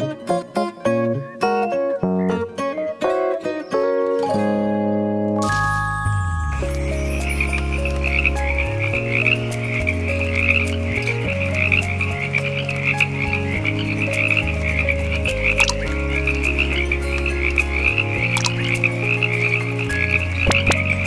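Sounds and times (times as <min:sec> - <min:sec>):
background music low notes: 0:00.0 - 0:21.0
frogs croaking: 0:07.0 - 0:21.0.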